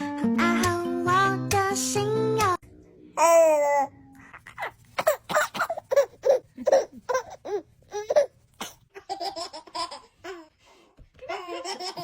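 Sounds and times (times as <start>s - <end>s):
baby laughing: 3.2s - 10.5s, 11.2s - 12.0s.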